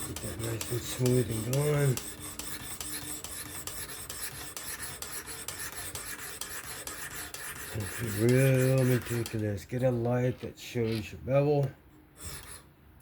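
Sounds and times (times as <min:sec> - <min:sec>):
sharpening stone rasping on knife: 0:00.0 - 0:09.4.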